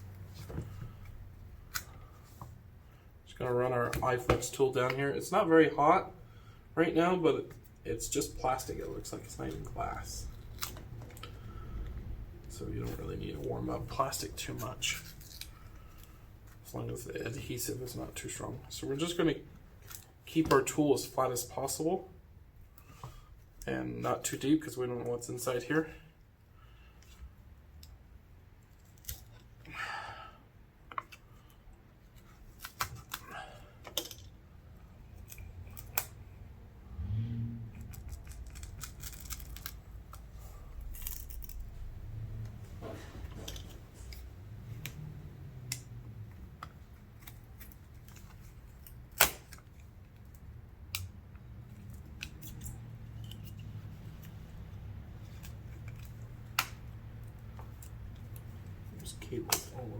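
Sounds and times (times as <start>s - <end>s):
low hum: 7.9s - 16.8s.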